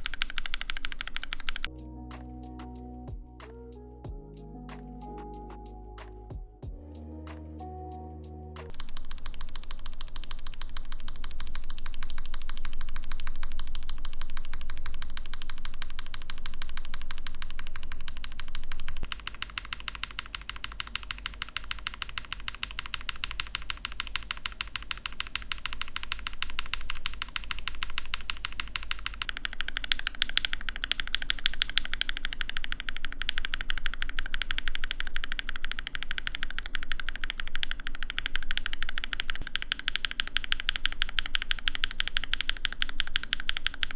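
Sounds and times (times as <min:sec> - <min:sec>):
mechanical keyboard key clacks: 0:19.0 - 0:43.9.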